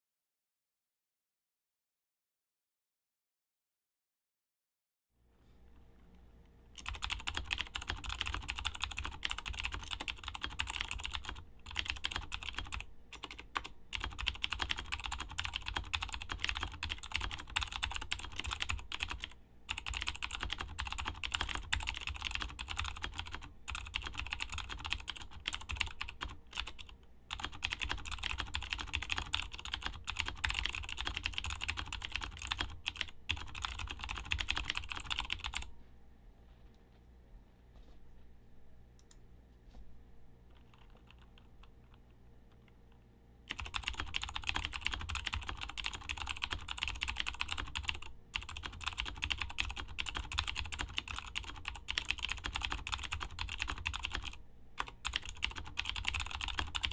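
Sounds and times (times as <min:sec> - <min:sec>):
mechanical keyboard typing: 0:06.8 - 0:35.7, 0:40.6 - 0:42.0, 0:43.5 - 0:56.9.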